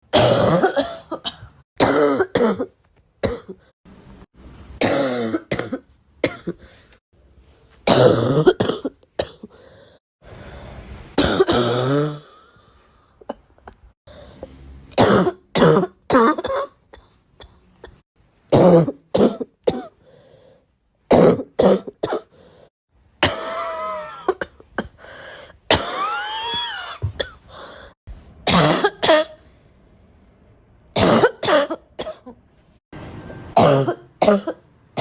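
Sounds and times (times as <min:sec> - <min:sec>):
person coughing: 0:00.1 - 0:03.7, 0:04.8 - 0:07.0, 0:07.9 - 0:09.6, 0:11.2 - 0:12.6, 0:15.0 - 0:20.0, 0:21.1 - 0:22.4, 0:23.2 - 0:25.0, 0:25.7 - 0:27.6, 0:28.5 - 0:29.4, 0:31.0 - 0:32.4, 0:33.6 - 0:34.6.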